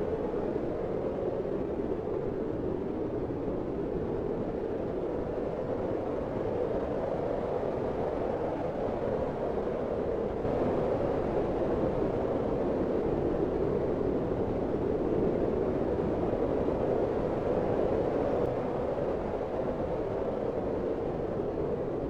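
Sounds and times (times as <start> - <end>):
blizzard wind howling: 4.5 - 22.0.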